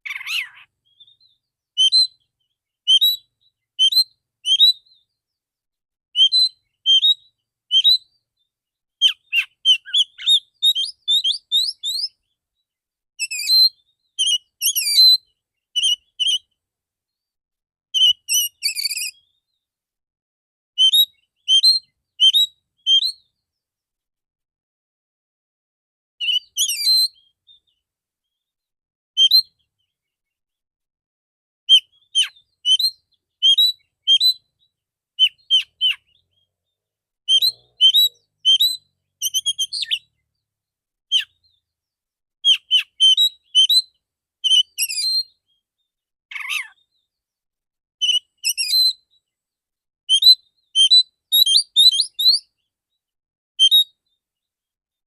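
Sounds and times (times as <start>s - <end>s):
bird singing whistled notes: 0.0s - 5.2s, 6.2s - 12.4s, 13.2s - 16.6s, 18.0s - 19.6s, 20.8s - 23.5s, 26.2s - 28.6s, 29.2s - 30.0s, 31.7s - 40.2s, 41.1s - 41.8s, 42.4s - 47.2s, 48.0s - 49.3s, 50.1s - 52.7s, 53.6s - 54.2s.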